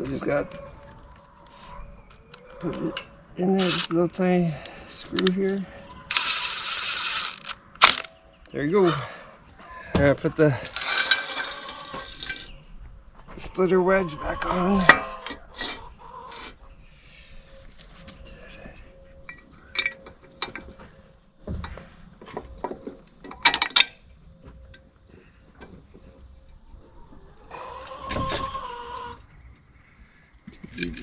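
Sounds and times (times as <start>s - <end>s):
metal clinks and knocks: 19.3s - 20.9s, 21.6s - 24.1s.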